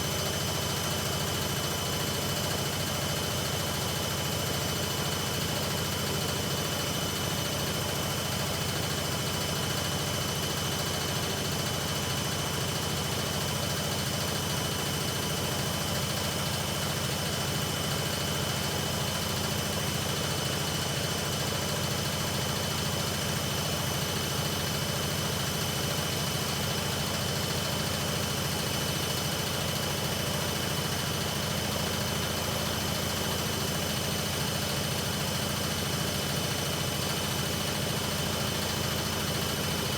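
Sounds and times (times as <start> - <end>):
washing machine spinning: 34.2 - 39.9.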